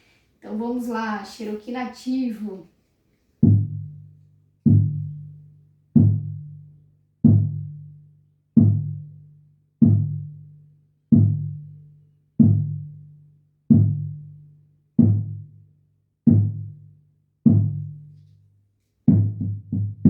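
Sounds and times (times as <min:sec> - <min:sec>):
hand drum beating: 0:03.4 - 0:04.0, 0:04.6 - 0:05.2, 0:06.0 - 0:06.5, 0:07.2 - 0:07.7, 0:08.6 - 0:09.0, 0:09.8 - 0:10.2, 0:19.1 - 0:20.0.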